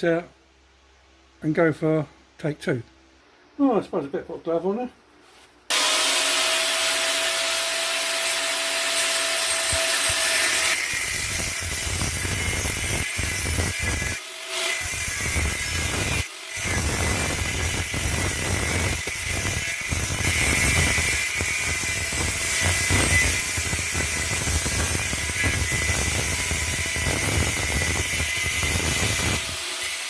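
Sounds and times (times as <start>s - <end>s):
power tool grinding steel: 5.7s - 30.0s.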